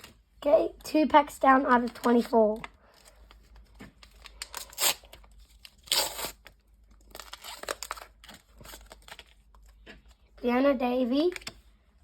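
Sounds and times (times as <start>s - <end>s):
wrapper crinkling: 1.7s - 9.8s
wrapper ripping: 4.0s - 9.5s.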